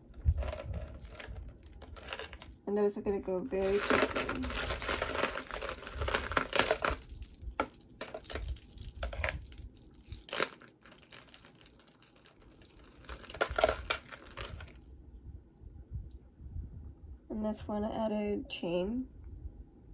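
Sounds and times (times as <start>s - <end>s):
metal chains clinking and rattling: 0.0s - 2.6s, 3.5s - 14.8s.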